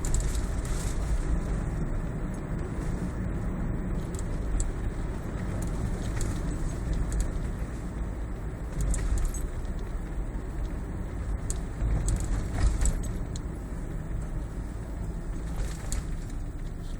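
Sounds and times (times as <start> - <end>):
road and tyre rumble: 0.0 - 16.9
faint ticking rattles: 3.9 - 16.9.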